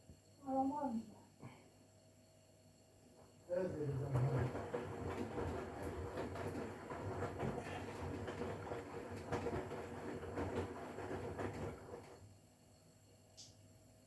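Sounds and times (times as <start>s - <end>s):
washing machine motor whine: 3.5s - 12.4s
irregular knocking: 3.8s - 12.2s.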